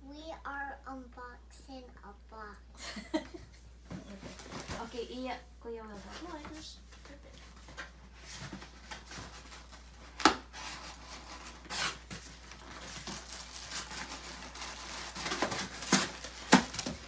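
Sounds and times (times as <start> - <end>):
cardboard packaging tearing: 8.3 - 17.0
sharp snaps of cardboard: 10.2 - 10.5, 15.3 - 17.0.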